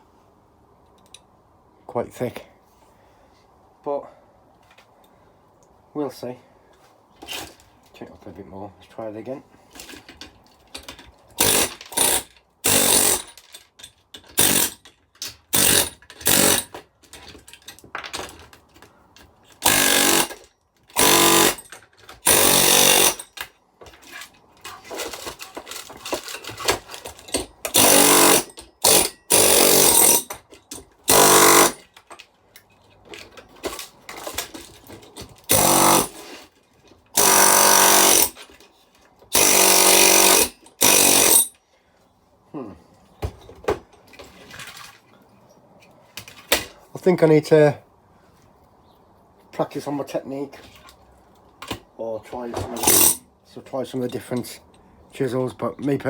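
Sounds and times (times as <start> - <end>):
air hammer chisel blows: 19.6 - 20.4.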